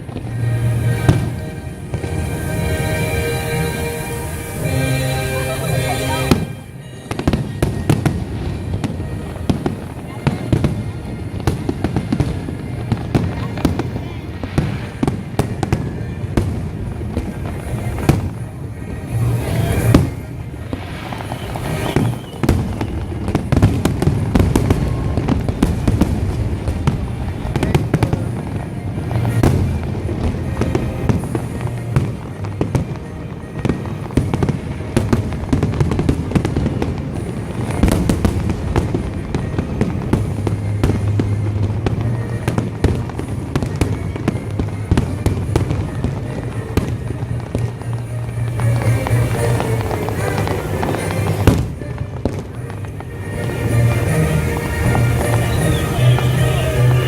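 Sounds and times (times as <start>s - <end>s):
fireworks booming and crackling: 0.0s - 57.0s.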